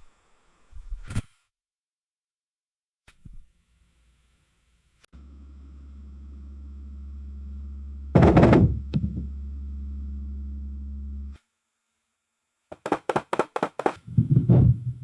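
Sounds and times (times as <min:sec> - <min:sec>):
loud muffled burst: 0:08.1 - 0:09.3.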